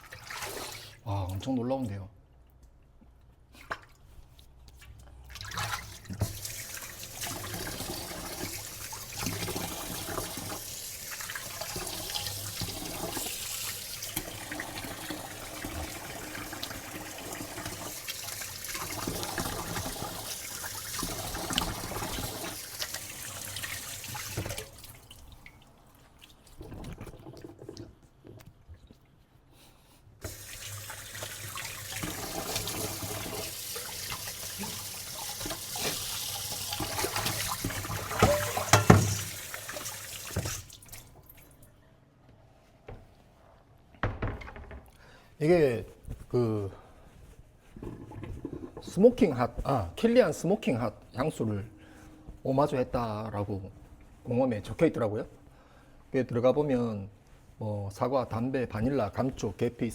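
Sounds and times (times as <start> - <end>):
tap water splashing into sink: 5.3 - 27.9, 30.2 - 41.6.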